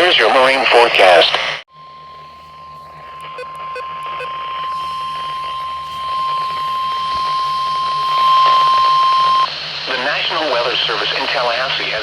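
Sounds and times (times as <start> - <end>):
steady warning alarm beep: 1.7 - 9.5
faint radio hiss: 4.7 - 12.0.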